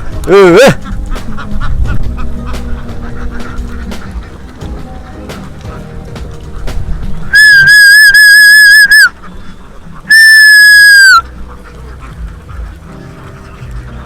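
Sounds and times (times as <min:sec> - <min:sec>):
person whistling loudly: 0:07.3 - 0:09.1, 0:10.1 - 0:11.2.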